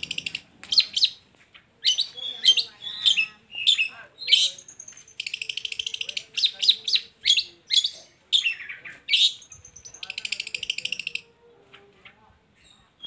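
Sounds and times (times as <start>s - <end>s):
bird rattling trill: 0.0s - 1.2s, 9.2s - 11.2s
bird chirping and whistling: 1.8s - 11.2s.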